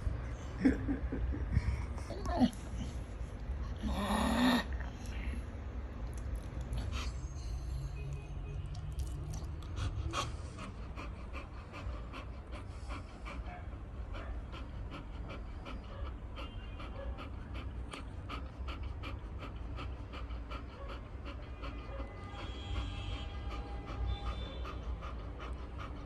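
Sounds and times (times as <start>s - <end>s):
dog panting: 6.0s - 8.0s, 8.6s - 26.0s.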